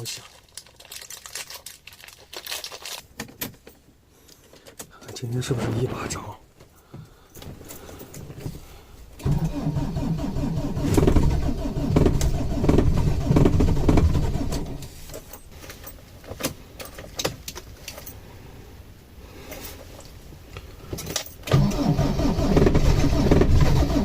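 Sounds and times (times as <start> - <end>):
car engine cranking on starter: 9.2 - 15.0, 21.5 - 24.0.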